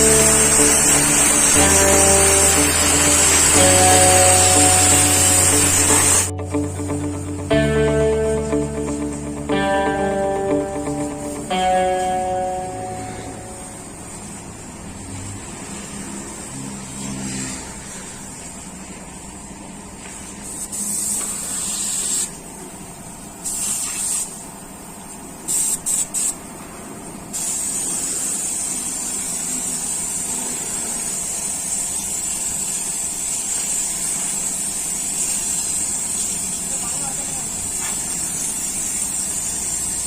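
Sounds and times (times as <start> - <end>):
compressed air hissing: 0.0 - 6.3, 20.4 - 22.4, 23.4 - 24.5, 25.5 - 26.4, 27.4 - 36.7, 37.7 - 40.0.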